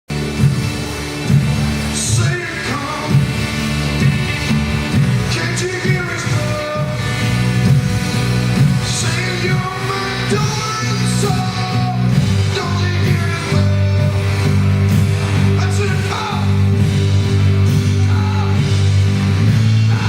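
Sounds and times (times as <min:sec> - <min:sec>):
drums: 0:00.1 - 0:20.0
sustained low chords: 0:00.1 - 0:20.0
man singing: 0:01.9 - 0:03.6, 0:05.2 - 0:07.2, 0:08.8 - 0:14.6, 0:15.6 - 0:16.8, 0:17.8 - 0:18.8, 0:19.8 - 0:20.0.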